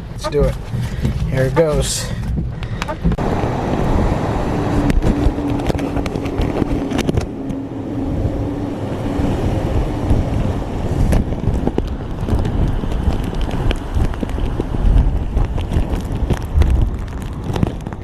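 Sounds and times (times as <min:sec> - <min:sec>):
steady low tone: 0:00.0 - 0:00.7
wind buffeting muffled rumble: 0:00.0 - 0:18.0.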